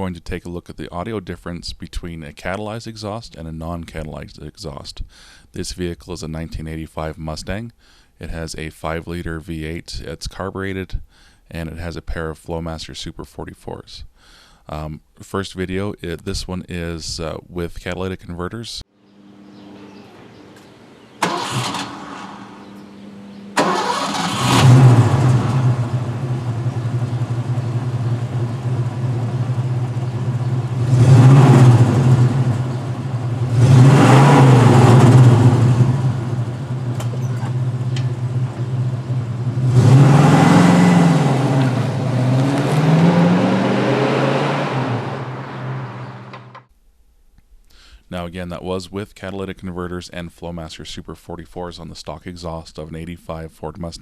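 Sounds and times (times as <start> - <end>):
car engine starting and idling: 19.4 - 46.7
car engine revving: 21.2 - 22.8, 23.6 - 46.7.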